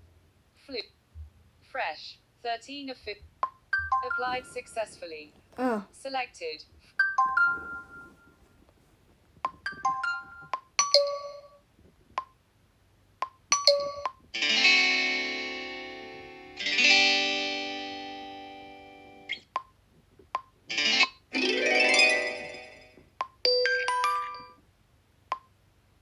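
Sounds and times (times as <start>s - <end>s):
ringtone chime notes: 23.5s - 24.5s.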